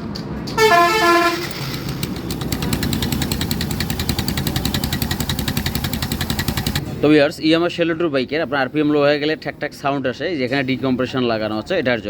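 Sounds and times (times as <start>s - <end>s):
vehicle horn toot: 0.6s - 2.1s
motorcycle engine idling: 0.6s - 6.8s.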